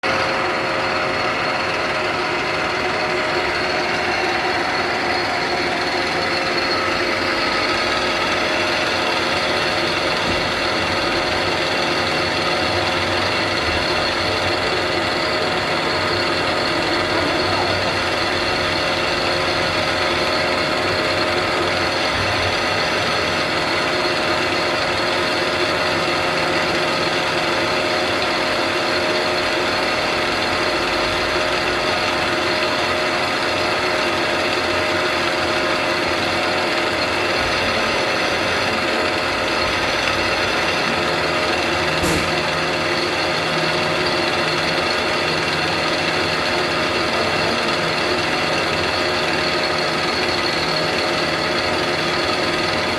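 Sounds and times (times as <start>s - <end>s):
lathe machine whine: 0.0s - 52.9s
sharp click: 42.0s - 42.6s.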